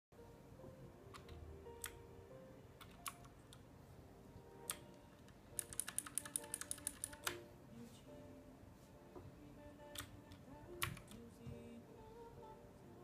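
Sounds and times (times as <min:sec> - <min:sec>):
faint background music: 0:00.2 - 0:13.0
clicky mechanical keyboard typing: 0:02.8 - 0:03.6, 0:04.7 - 0:07.4, 0:09.9 - 0:11.2.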